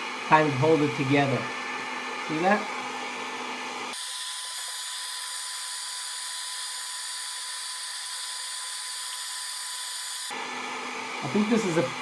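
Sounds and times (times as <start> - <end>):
hot-air blower hissing: 0.0 - 12.0.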